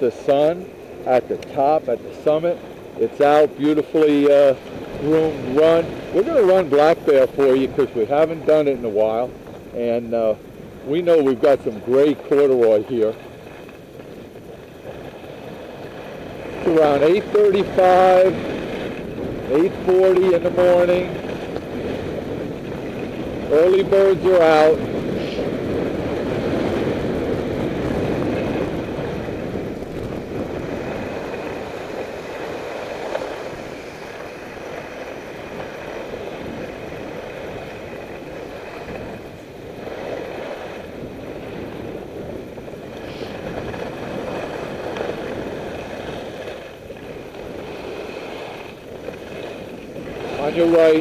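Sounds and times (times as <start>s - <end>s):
wind on microphone: 0.0s - 51.0s
skis scraping on snow: 11.4s - 51.0s.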